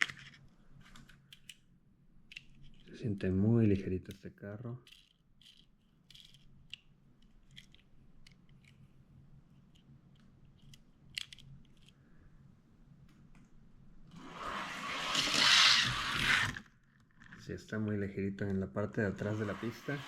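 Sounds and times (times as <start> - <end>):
toy car clicks and crinkles: 0.0 - 1.7, 2.3 - 3.0, 4.8 - 8.9, 9.5 - 12.0
toy car rolling on track: 14.1 - 17.4, 19.2 - 20.0.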